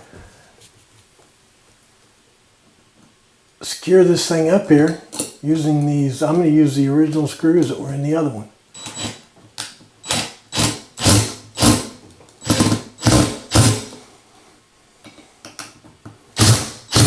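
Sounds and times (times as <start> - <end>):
screws being driven: 8.8 - 9.2, 10.0 - 14.0, 16.4 - 17.0.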